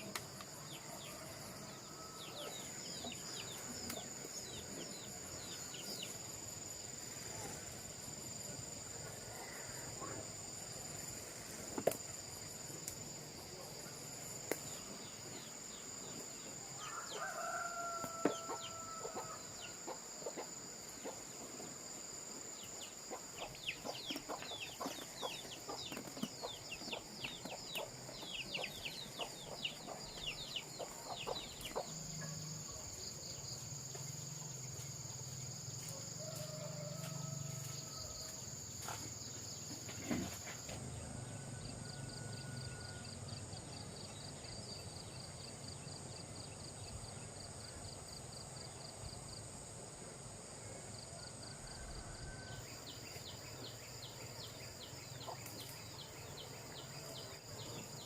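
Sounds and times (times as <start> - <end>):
high insect drone: 0.0 - 58.0
rooster crowing: 16.8 - 20.0, 35.9 - 38.4, 41.0 - 43.2, 51.2 - 52.7.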